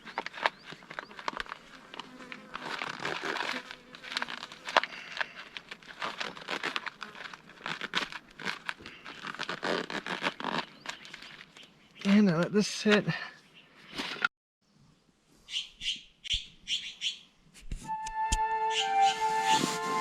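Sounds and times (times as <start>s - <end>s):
food packet crinkling: 0.0s - 11.7s
small clicks and scrapes: 0.0s - 11.7s.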